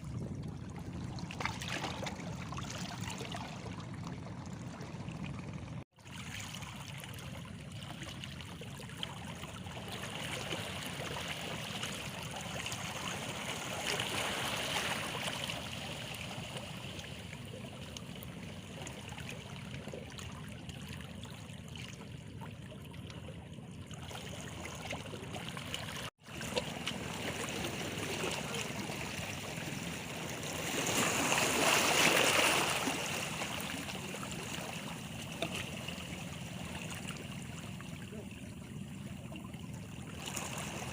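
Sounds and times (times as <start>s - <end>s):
small waves lapping on stones: 6.0s - 22.0s, 23.9s - 38.6s, 40.1s - 40.9s.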